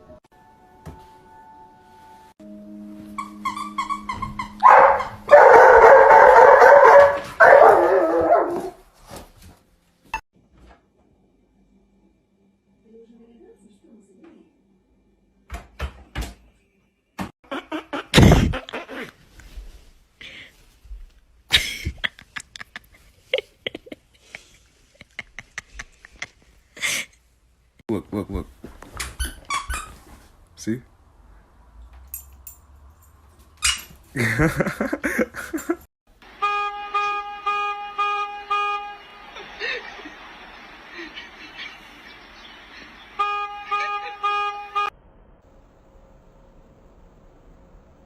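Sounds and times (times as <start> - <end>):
horn honking: 2.4 - 7.8, 36.2 - 41.0, 42.6 - 45.0.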